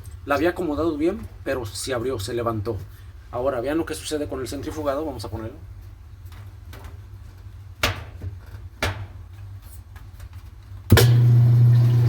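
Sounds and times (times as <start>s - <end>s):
washing machine motor humming: 10.9s - 12.0s.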